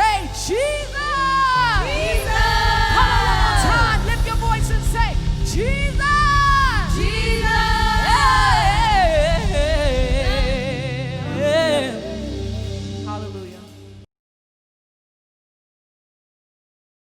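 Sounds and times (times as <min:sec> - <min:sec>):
band accompaniment with beat: 0:00.0 - 0:13.2
gospel singing with vibrato: 0:00.0 - 0:14.0.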